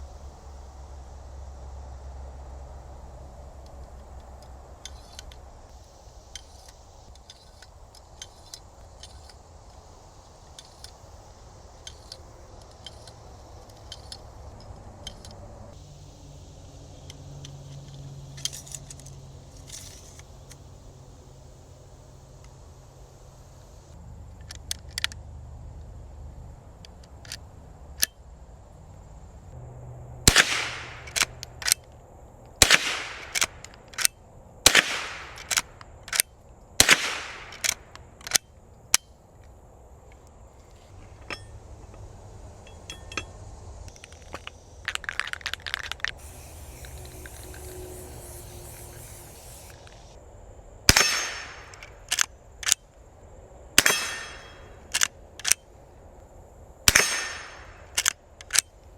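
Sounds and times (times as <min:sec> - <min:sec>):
rifle shots echoing: 0:30.2 - 0:31.4, 0:32.6 - 0:33.6, 0:34.6 - 0:35.7, 0:36.8 - 0:37.9, 0:50.9 - 0:52.0, 0:53.8 - 0:54.8, 0:56.9 - 0:58.0
metallic lever action clicks: 0:32.8 - 0:39.1, 0:50.9 - 0:52.8, 0:53.8 - 0:55.6, 0:56.9 - 0:58.7.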